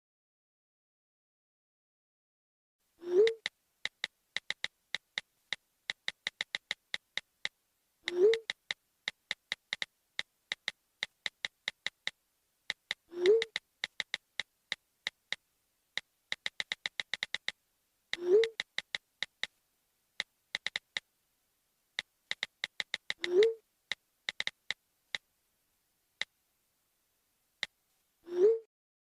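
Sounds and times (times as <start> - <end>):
phone keyboard typing clicks: 3.2 - 5.2, 5.9 - 7.3, 8.1 - 9.9, 10.5 - 12.1, 12.7 - 14.5, 16.3 - 17.6, 18.4 - 19.5, 20.6 - 21.0, 22.3 - 23.4, 24.3 - 24.8.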